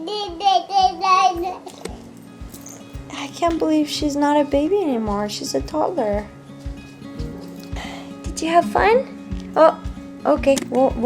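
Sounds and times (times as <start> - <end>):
toddler singing: 0.0 - 2.0.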